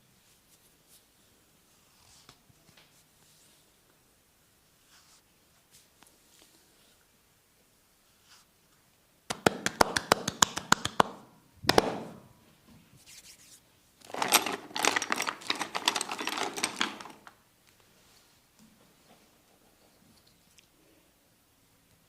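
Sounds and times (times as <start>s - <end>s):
scratchy crackling: 14.0s - 17.3s.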